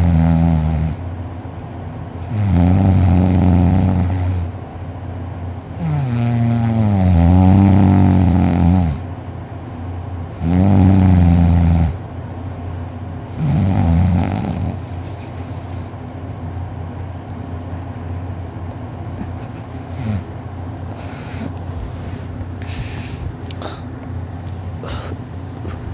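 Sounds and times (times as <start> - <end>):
man snoring: 0.0 - 1.0, 2.2 - 4.6, 5.7 - 9.0, 10.3 - 12.0, 13.3 - 15.9, 19.7 - 20.3
quiet breathing: 19.5 - 24.0.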